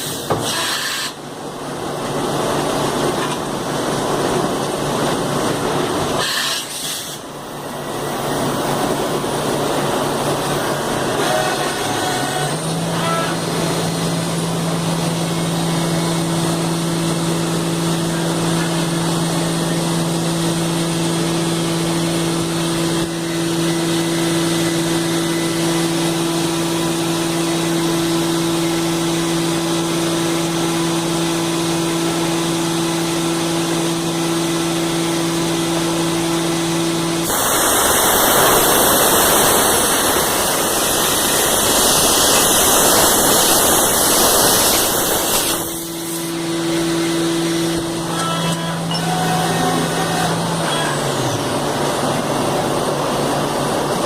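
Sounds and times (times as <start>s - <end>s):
loud hiss: 6.2s - 7.3s, 37.2s - 46.5s
machine humming: 7.3s - 54.0s.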